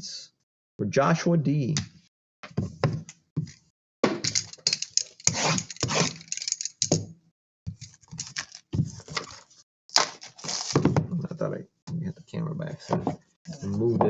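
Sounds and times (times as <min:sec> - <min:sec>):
card packaging rustling: 0:07.9 - 0:10.8.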